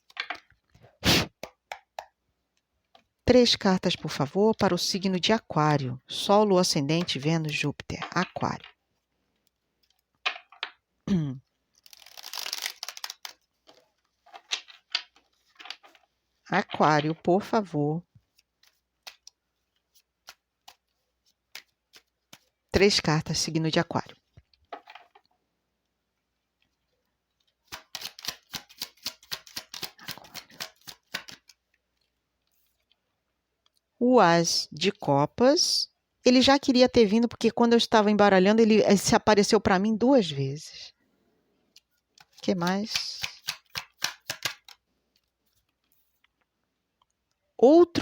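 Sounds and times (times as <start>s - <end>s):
short vocal sound: 11.1s - 11.5s
cards being shuffled: 11.8s - 17.3s, 18.2s - 22.6s, 27.6s - 31.6s, 42.1s - 46.3s
card taps: 42.8s - 44.8s.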